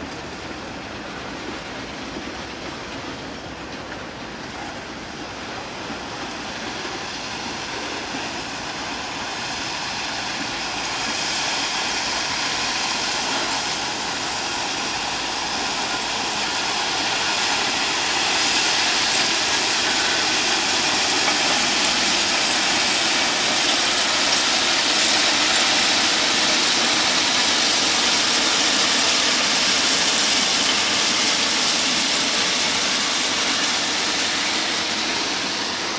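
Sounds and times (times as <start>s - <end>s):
rail vehicle running: 0.0s - 35.9s.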